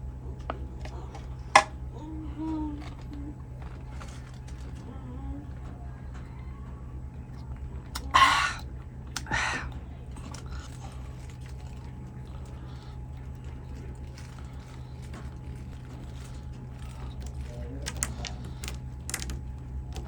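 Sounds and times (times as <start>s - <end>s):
person chewing: 7.8s - 20.0s.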